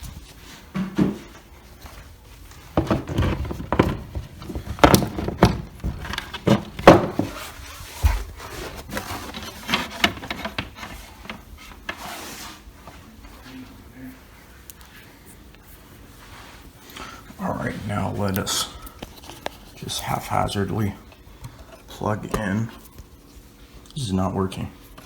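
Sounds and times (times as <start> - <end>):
parts knocking on wood: 2.8 - 7.4.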